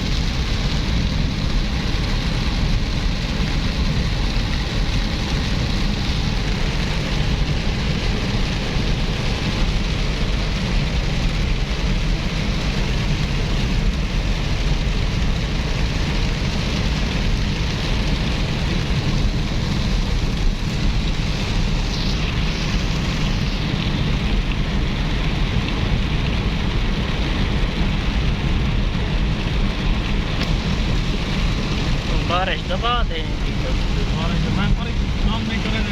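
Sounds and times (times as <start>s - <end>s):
low rumble: 0.0s - 35.9s
rain falling: 0.0s - 35.9s.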